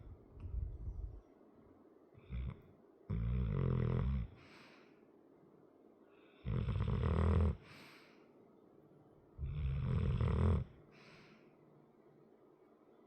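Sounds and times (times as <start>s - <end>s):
dog snoring: 2.2s - 4.4s, 6.4s - 7.7s, 9.4s - 10.8s.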